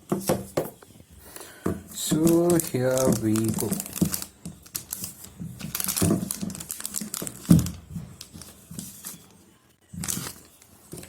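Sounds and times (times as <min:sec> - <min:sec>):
plastic packaging crinkling and tearing: 0:01.4 - 0:09.3, 0:09.9 - 0:11.0.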